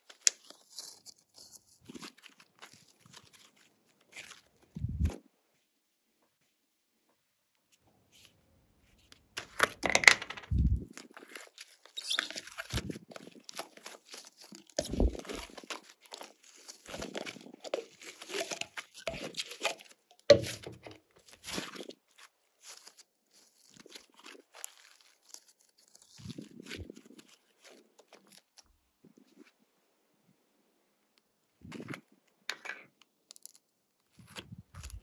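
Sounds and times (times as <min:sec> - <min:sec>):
slime squeezed with sticky crackles: 0:10.8 - 0:28.6.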